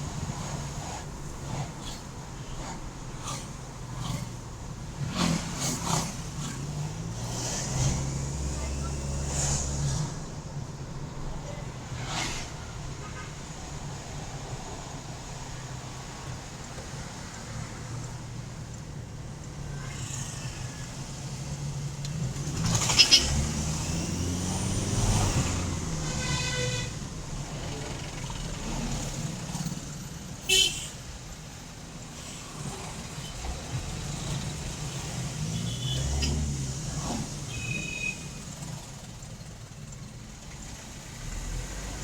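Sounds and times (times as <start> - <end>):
turbocharger whistling: 37.5 - 38.5.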